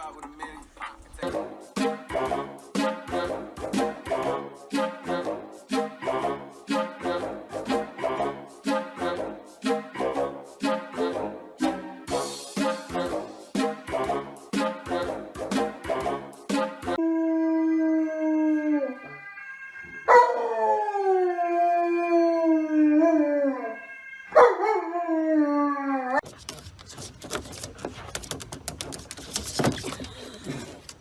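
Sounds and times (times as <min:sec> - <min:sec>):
dog howling: 0:17.0 - 0:26.2
clicks and rustling: 0:26.2 - 0:31.0.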